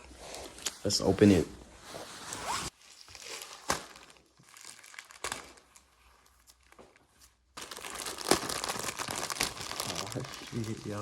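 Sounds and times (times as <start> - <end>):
packaging crinkling and tearing: 2.8 - 11.0.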